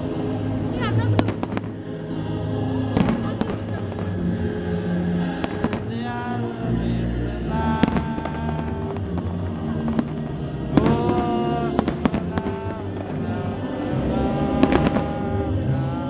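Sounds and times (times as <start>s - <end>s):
festive music: 0.0s - 16.0s.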